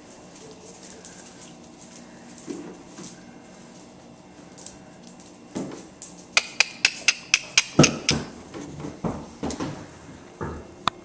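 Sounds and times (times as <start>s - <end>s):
sharp ringing clicks: 6.4s - 8.3s.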